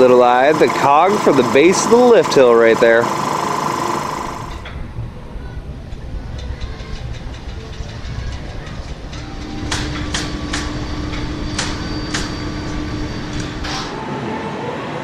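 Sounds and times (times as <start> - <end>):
low engine rumble: 0.0 - 15.0
hum: 3.1 - 15.0
sharp ringing strikes: 9.4 - 14.0.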